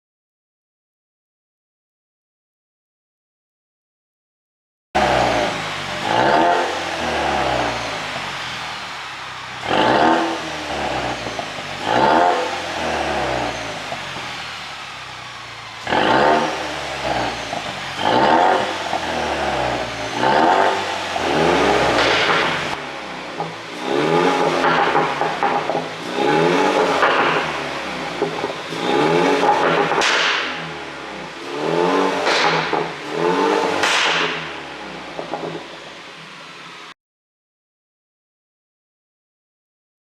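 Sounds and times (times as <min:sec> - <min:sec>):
car engine revving with exhaust crackles: 0:05.0 - 0:36.9.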